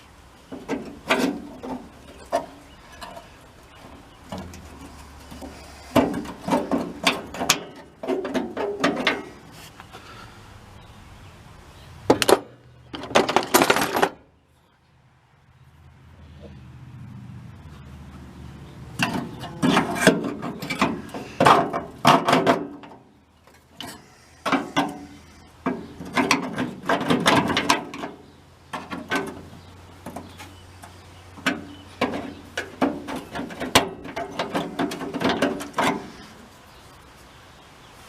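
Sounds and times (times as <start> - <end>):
hand tools clicking and scraping on metal: 0.5 - 9.9, 18.9 - 37.0.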